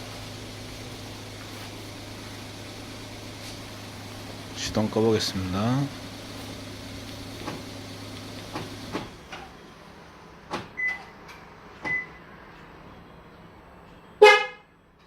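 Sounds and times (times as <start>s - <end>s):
car engine idling: 0.0s - 10.4s
car horn chirp: 14.0s - 14.7s.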